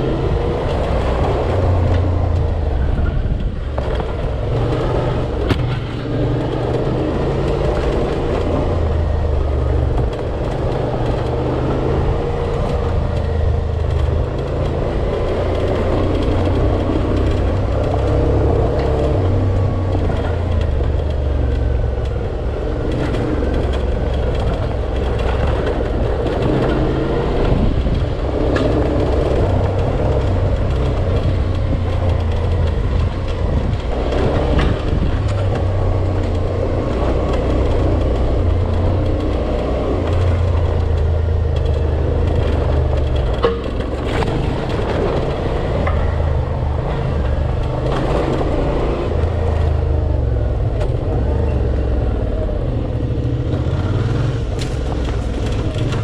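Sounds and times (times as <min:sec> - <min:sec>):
motorcycle engine revving: 0:00.0 - 0:56.0
sharp knocks: 0:43.2 - 0:46.2.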